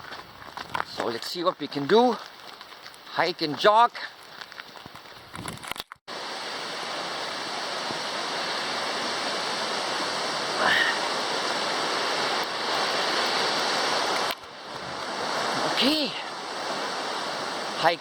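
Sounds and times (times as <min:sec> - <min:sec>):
creek water rushing: 0:06.1 - 0:18.0.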